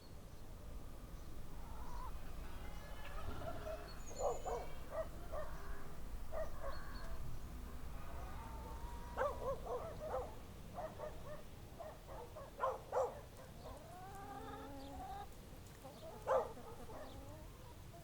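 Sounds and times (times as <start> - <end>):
low rural rumble: 0.0 - 12.2
small birds chirping: 0.0 - 18.0
dog barking: 4.1 - 5.7, 6.3 - 6.9, 9.1 - 13.9, 16.0 - 17.2.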